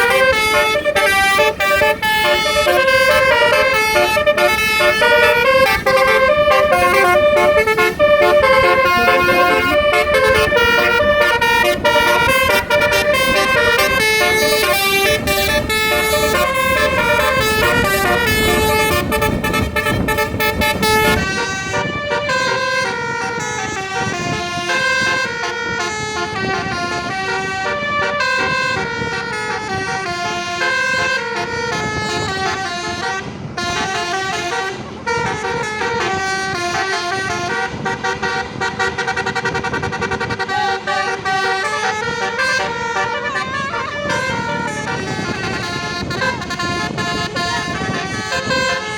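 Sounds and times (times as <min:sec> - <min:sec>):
bus engine rumble: 0:00.0 - 0:48.9
musical air horns playing tune: 0:00.0 - 0:48.9.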